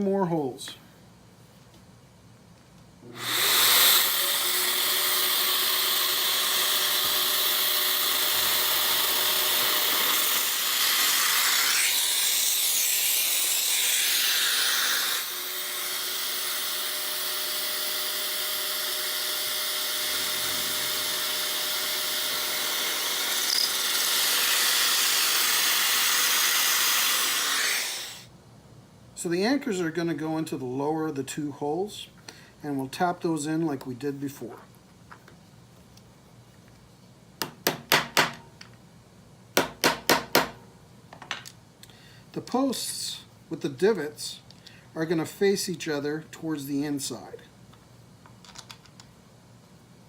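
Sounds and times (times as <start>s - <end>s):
electric drill whirring: 3.1s - 28.3s.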